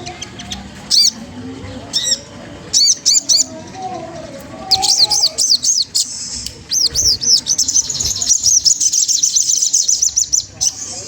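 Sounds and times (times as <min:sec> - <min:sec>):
bird chirping: 0:00.0 - 0:11.0.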